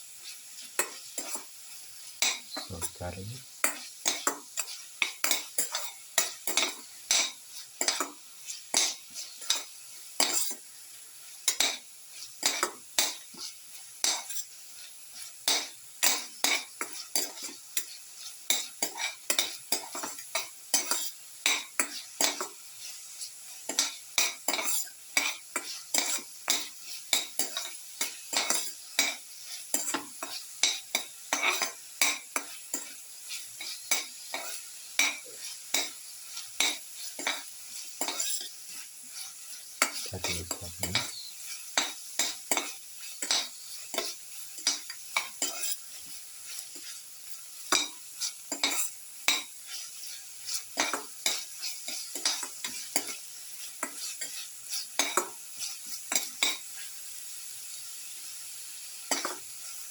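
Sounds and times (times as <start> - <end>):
shallots sizzling in oil: 0.0 - 59.9
utensil scraping a pan: 20.8 - 56.6.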